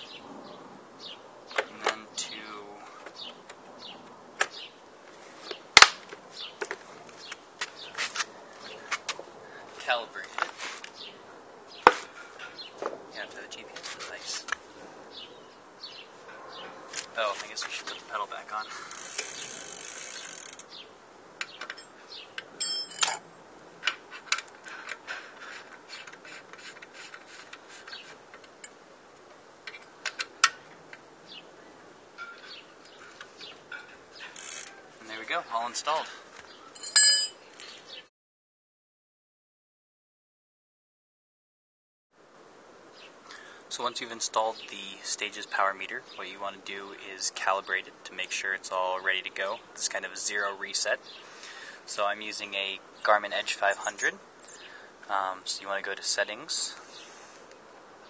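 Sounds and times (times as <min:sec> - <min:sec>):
bird chirping: 0:03.0 - 0:04.8, 0:15.1 - 0:16.9, 0:17.7 - 0:23.2, 0:27.7 - 0:28.2, 0:31.2 - 0:38.1, 0:49.5 - 0:55.4.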